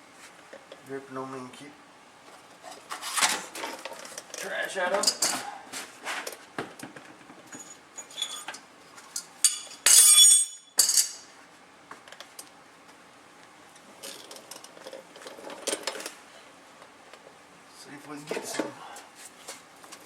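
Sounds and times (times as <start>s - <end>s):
metal hand tools clinking: 9.2s - 11.2s.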